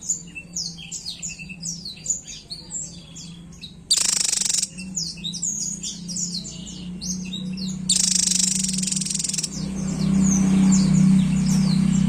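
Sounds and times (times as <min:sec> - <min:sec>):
bird buzzing trill: 0:03.9 - 0:05.1, 0:07.9 - 0:11.6.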